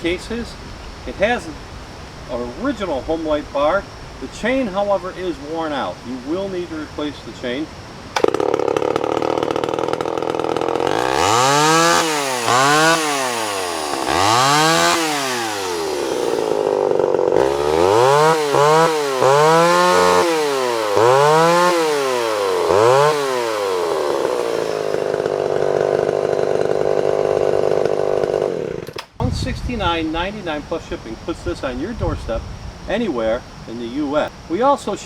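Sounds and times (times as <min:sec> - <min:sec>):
chainsaw engine revving: 0:08.2 - 0:29.2.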